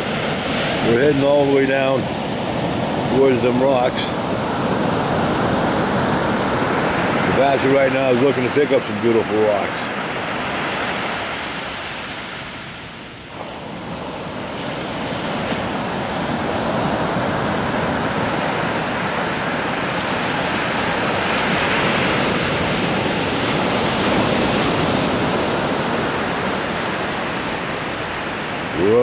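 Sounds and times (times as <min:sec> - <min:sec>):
surf breaking on shore: 0:00.0 - 0:29.0.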